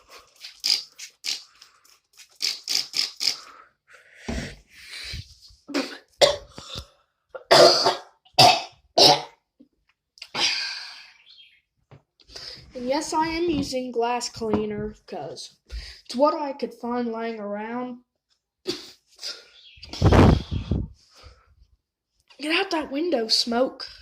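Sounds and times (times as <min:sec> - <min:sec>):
person coughing: 0:05.7 - 0:06.6, 0:07.4 - 0:09.4.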